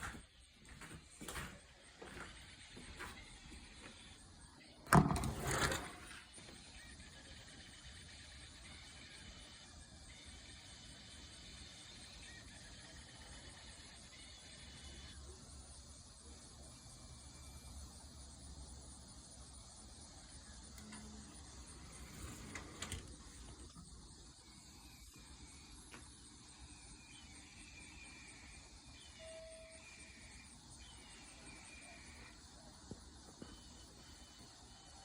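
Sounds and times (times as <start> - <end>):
faint insects chirring: 0.0 - 35.0.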